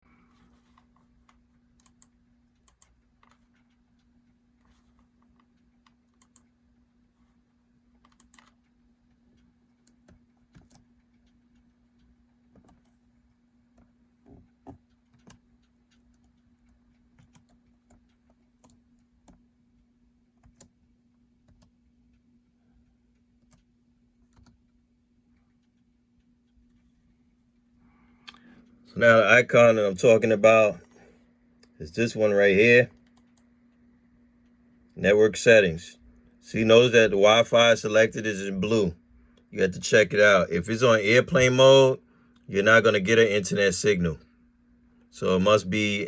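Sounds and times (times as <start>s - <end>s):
steady low hum: 0.0s - 46.0s
laptop keys clicking: 0.7s - 6.6s, 8.0s - 13.0s, 13.7s - 19.5s, 20.2s - 20.8s, 21.4s - 22.2s, 23.4s - 24.8s.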